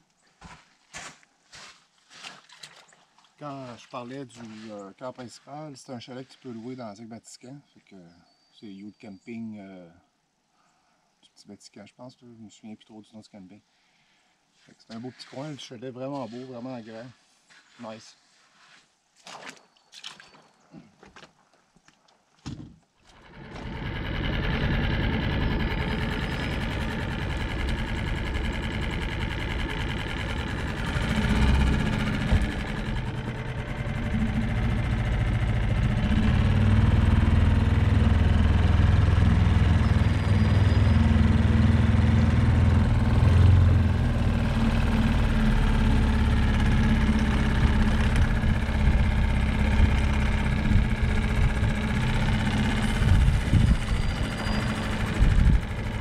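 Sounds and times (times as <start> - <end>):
vehicle engine driving: 23.1 - 56.0.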